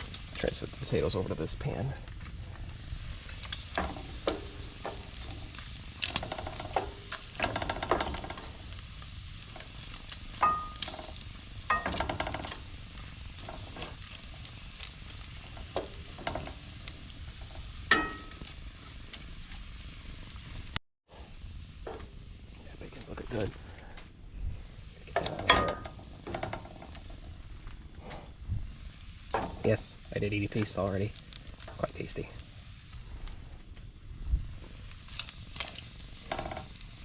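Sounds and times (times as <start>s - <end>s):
food sizzling in pans: 0.0s - 20.8s, 24.5s - 37.0s
utensil clinking against pan: 17.9s - 18.4s.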